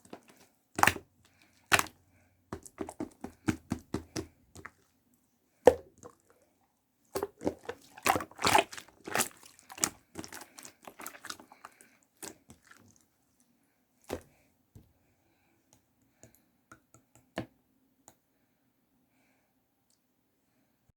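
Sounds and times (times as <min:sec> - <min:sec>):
slime squishing and popping: 0:00.1 - 0:01.0, 0:07.2 - 0:11.4.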